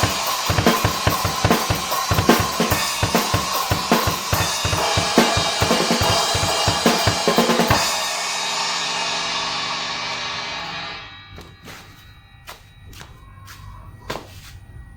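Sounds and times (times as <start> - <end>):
bass drum and snare strokes: 0.0 - 8.1
cymbal ringing: 0.0 - 14.9.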